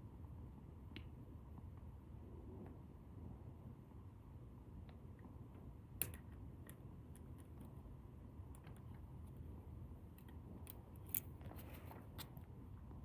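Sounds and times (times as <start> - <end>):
lock pick clicks and scrapes: 10.2 - 12.3.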